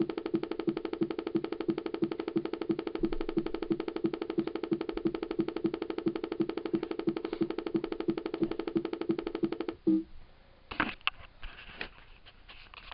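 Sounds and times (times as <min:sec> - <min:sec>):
computer pulsing buzzing tone: 0:00.0 - 0:10.0.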